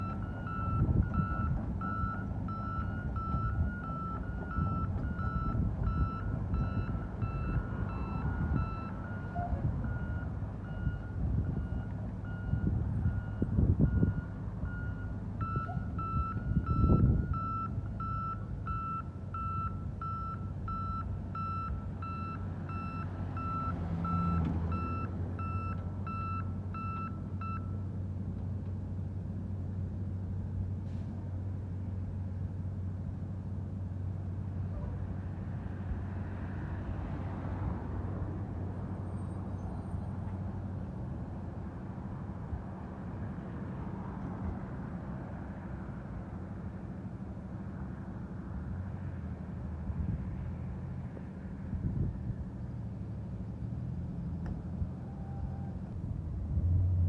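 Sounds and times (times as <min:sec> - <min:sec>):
reversing alarm beeping: 0:00.0 - 0:27.9
diesel engine running: 0:00.0 - 0:36.4.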